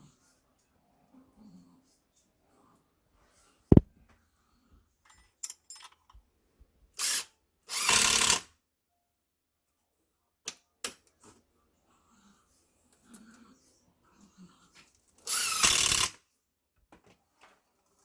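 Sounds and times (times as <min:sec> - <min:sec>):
small power tool running: 0:15.3 - 0:16.2.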